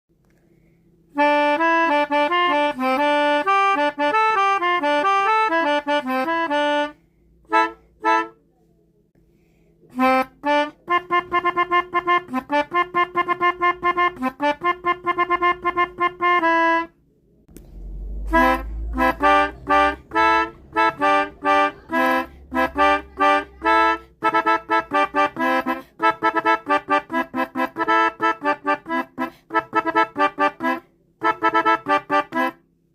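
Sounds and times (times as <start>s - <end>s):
multi-tone musical horn: 1.1s - 8.4s, 9.9s - 17.0s, 18.0s - 32.6s
low rumble: 17.5s - 20.7s.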